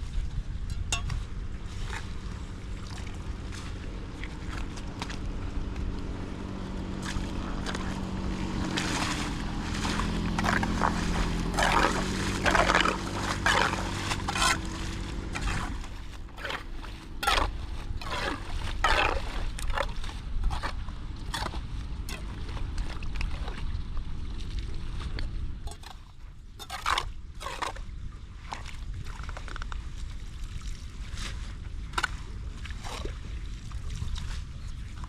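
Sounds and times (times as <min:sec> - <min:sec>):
steady low hum: 0:00.0 - 0:35.0
water sloshing and splashing: 0:00.0 - 0:35.0
scraping: 0:03.1 - 0:21.6.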